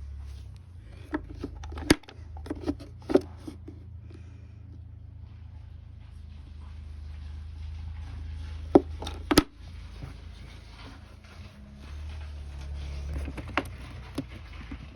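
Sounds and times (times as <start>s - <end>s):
low steady rumble: 0.0s - 14.9s
clicks and knocks: 1.0s - 3.8s, 8.7s - 9.6s.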